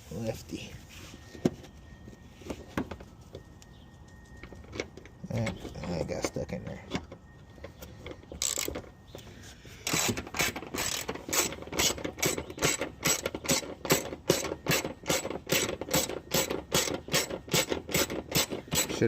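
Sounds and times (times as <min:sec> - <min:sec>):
ratchet wrench clicking: 0:08.4 - 0:08.7, 0:09.8 - 0:19.0.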